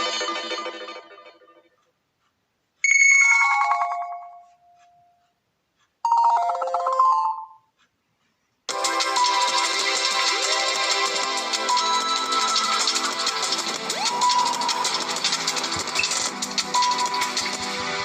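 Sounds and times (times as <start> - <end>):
phone ringtone melodies: 2.9 - 5.2, 6.0 - 7.7, 8.7 - 17.8.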